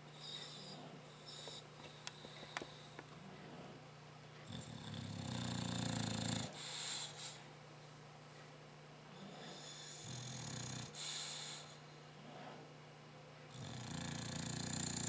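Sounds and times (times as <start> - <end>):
dog snoring: 0.1 - 3.8, 4.4 - 7.4, 9.1 - 12.7, 13.5 - 15.0
dog noisy breath: 5.5 - 7.6, 10.8 - 12.7.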